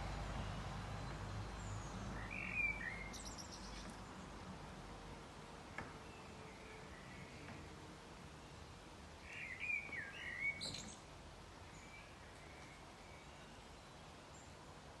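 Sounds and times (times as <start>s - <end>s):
faint outdoor background noise: 0.0s - 15.0s.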